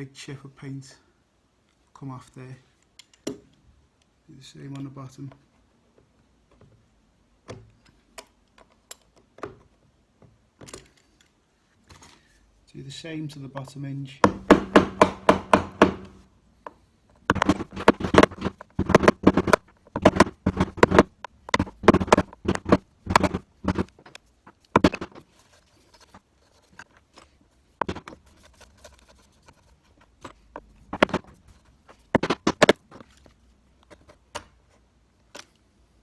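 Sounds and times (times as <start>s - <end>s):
knife blade scratching paint: 17.3s - 26.8s.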